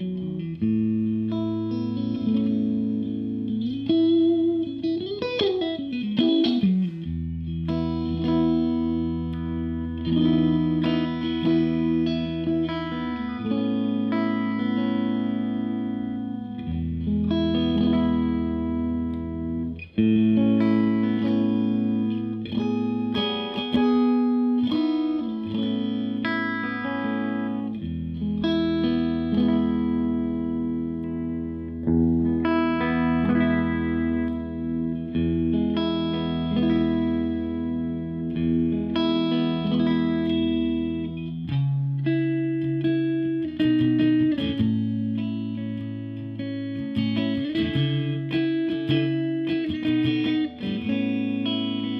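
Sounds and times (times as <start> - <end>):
electric guitar chords: 0.0 - 51.9.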